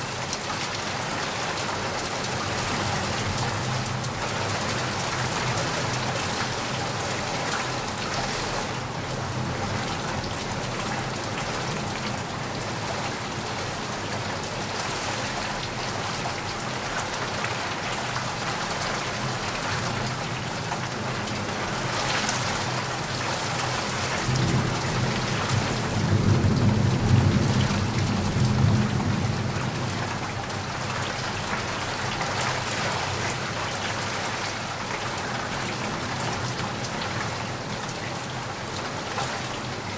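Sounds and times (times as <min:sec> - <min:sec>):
steady rain falling: 0:00.0 - 0:39.9
thunder rumbling low: 0:24.2 - 0:30.0.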